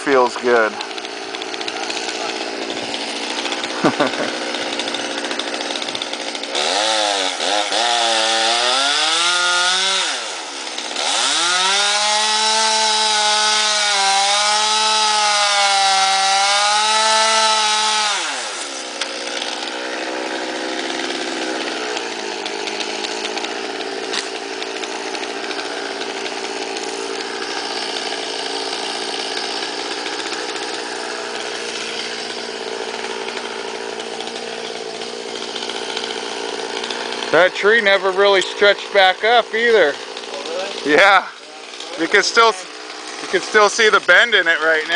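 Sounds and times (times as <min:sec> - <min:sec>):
chainsaw cutting wood: 0:00.0 - 0:44.9.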